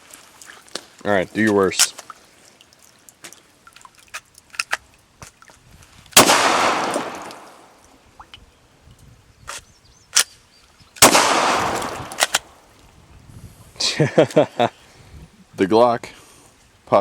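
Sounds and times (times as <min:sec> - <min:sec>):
pistol shots with rolling echo: 0:06.2 - 0:07.8, 0:11.0 - 0:12.6.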